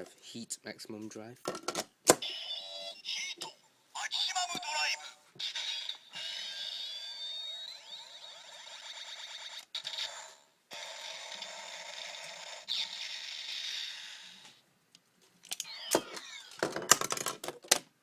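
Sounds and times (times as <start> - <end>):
toy electronic sound effects: 2.2 - 14.5, 15.6 - 16.6.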